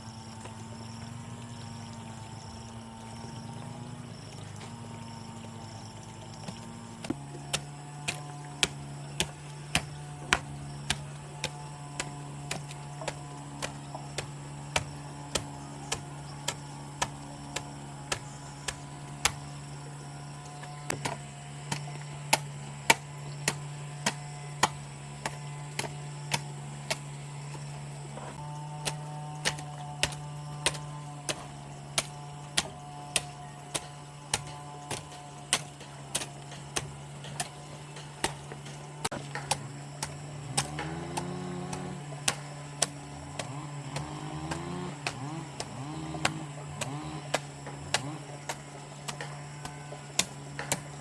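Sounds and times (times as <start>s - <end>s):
steady hum: 0.0s - 51.0s
sharp knocks: 6.4s - 19.6s, 20.9s - 27.8s.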